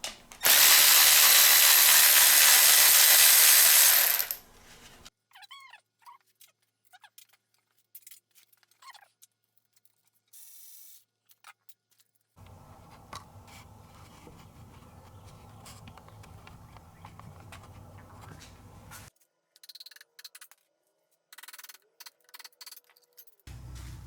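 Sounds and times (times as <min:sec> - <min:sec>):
hand tools clicking and tapping: 0:12.4 - 0:19.1.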